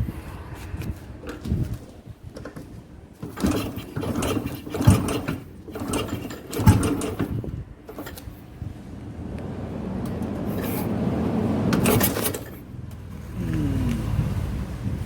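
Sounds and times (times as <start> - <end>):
metal parts clicking and knocking: 2.4 - 8.3.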